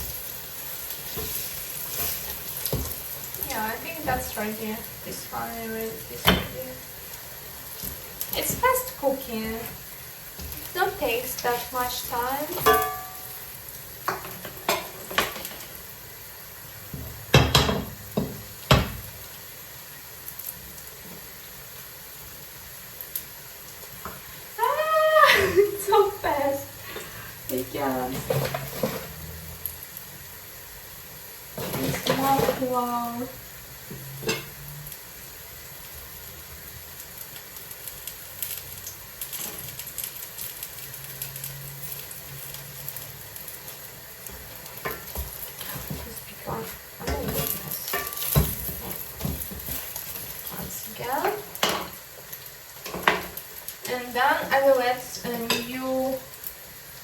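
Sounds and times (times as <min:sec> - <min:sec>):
cakes sizzling in hot oil: 0:00.0 - 0:57.0
utensil clinking on cookware: 0:12.6 - 0:13.4, 0:47.0 - 0:49.4.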